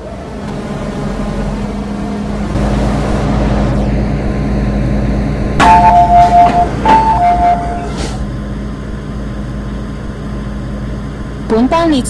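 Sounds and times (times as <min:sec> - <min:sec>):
stopped train hum: 0:00.0 - 0:12.0
two-tone electronic chime: 0:05.6 - 0:07.8.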